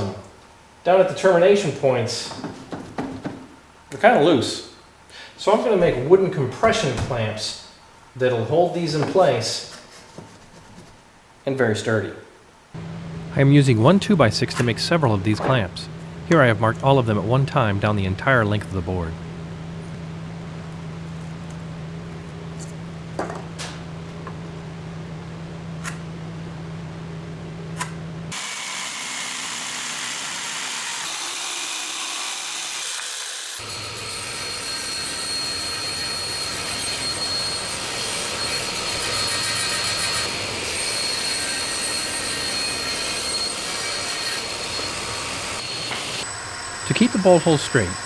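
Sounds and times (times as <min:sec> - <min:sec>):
power tool humming: 0:28.3 - 0:48.0
machine running with high whine: 0:34.6 - 0:48.0.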